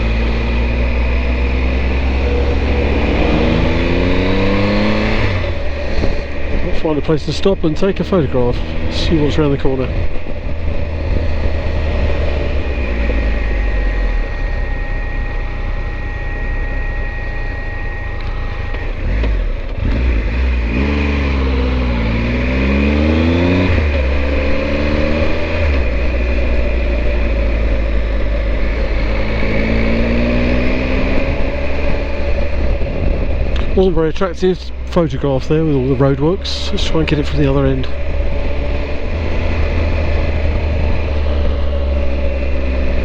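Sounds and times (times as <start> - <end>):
motorcycle engine on the road: 0.0 - 43.0
wind rumble on microphone: 2.0 - 15.6, 23.1 - 43.0.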